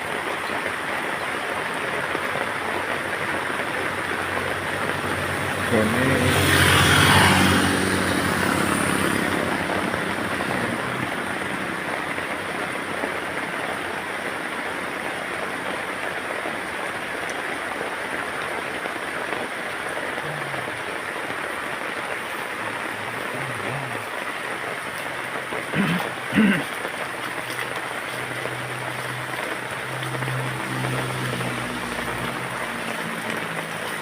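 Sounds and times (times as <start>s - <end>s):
steady rain hiss: 0.0s - 34.0s
passing vehicle engine hum: 3.2s - 16.0s, 21.8s - 34.0s.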